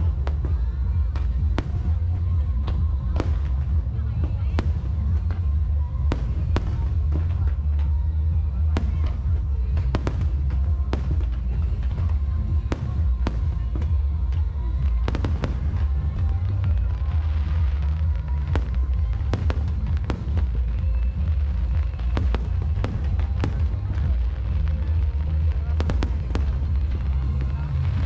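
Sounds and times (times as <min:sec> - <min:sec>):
music playing: 0:00.0 - 0:28.0.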